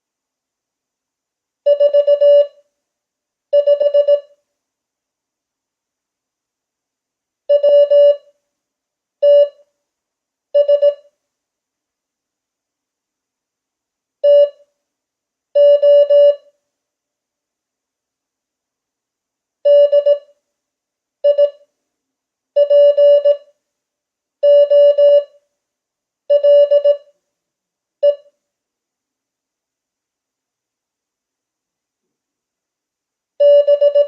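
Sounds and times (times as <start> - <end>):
morse code beeps: 3.6 - 4.2, 7.5 - 8.2, 15.6 - 16.4, 22.6 - 23.4, 24.4 - 25.3, 33.4 - 34.0.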